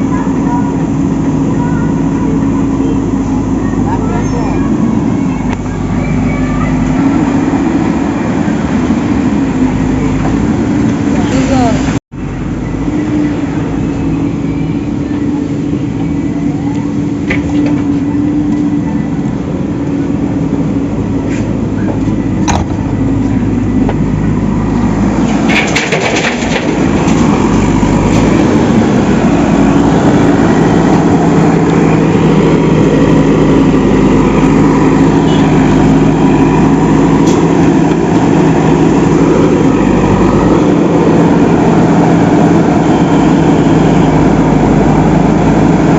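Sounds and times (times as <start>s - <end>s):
engine humming steadily: 0.0s - 45.9s
knocks and clatters: 25.2s - 28.4s.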